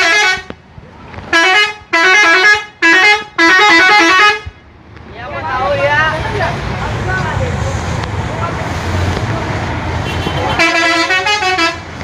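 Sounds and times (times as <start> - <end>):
multi-tone bus horn melody: 0.0 - 0.6, 1.3 - 4.6, 10.0 - 12.0.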